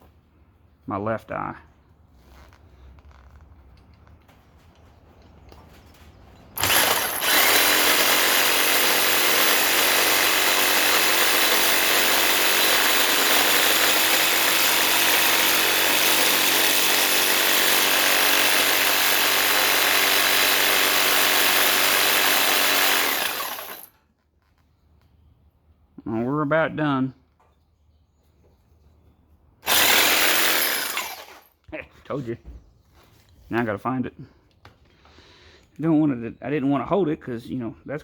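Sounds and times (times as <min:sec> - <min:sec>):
reciprocating saw cutting metal pipe: 0:06.6 - 0:23.9, 0:29.7 - 0:31.4.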